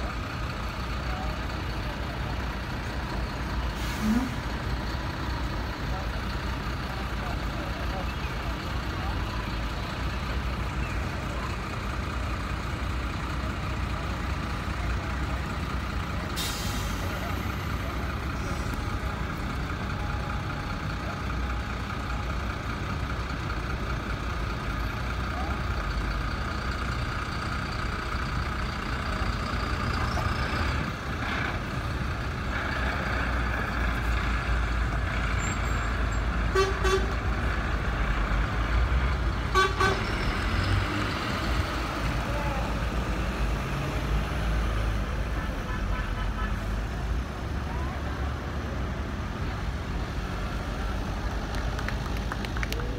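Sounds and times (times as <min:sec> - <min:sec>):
heavy truck engines rumbling: 0:00.0 - 0:52.9
vehicle horn toots: 0:36.5 - 0:37.2, 0:39.5 - 0:40.1.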